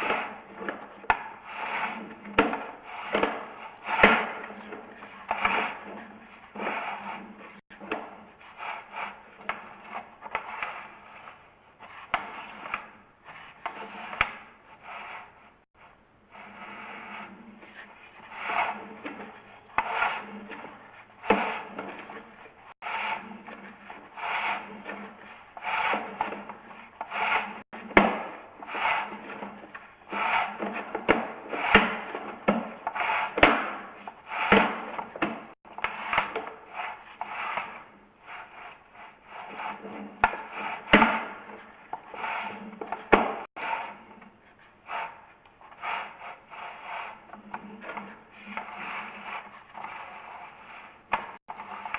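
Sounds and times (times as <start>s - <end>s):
cable scraping: 0.0s - 15.5s, 16.3s - 51.9s.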